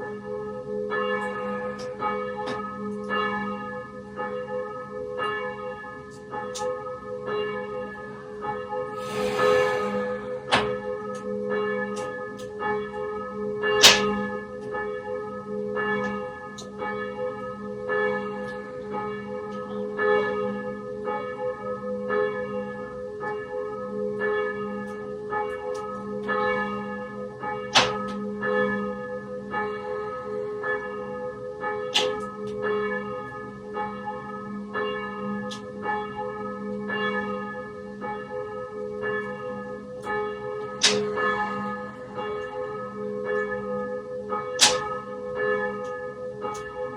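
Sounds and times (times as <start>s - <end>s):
church bells ringing: 16.8s - 46.9s.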